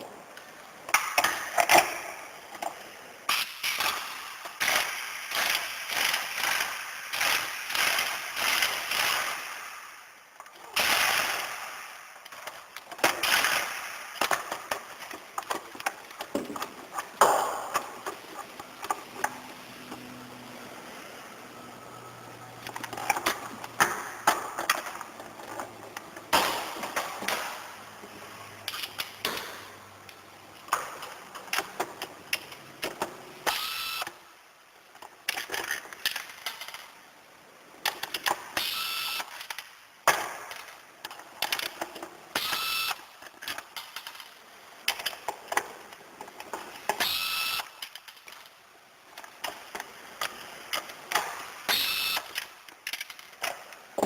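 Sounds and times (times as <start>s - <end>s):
small hard parts clicking and rattling: 34.9s - 37.0s, 43.2s - 54.0s.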